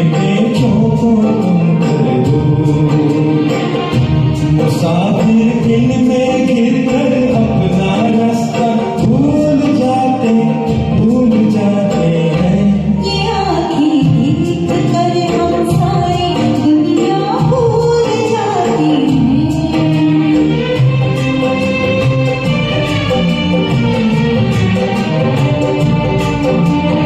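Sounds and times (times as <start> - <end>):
person singing over karaoke track: 0.0 - 27.0
light percussion beat: 13.8 - 27.0.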